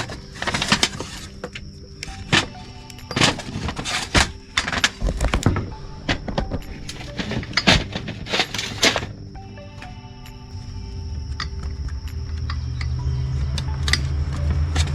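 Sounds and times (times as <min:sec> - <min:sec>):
plastic parts clattering and scraping: 0:00.0 - 0:09.9.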